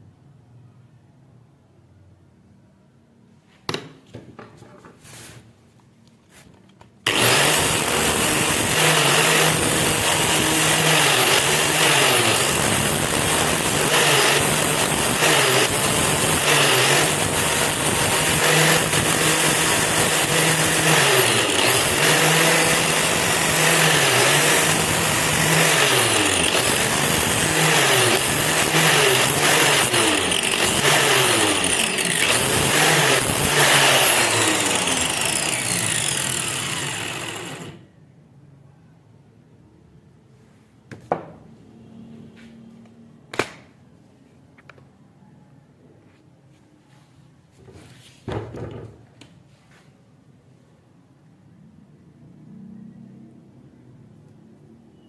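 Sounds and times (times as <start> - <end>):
electric power tool running: 7.0 - 37.8.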